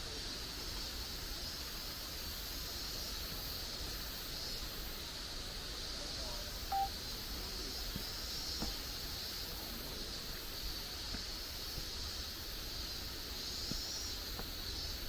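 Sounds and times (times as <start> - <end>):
steady outdoor hiss: 0.0 - 15.0
whistle-like beep: 6.7 - 6.9.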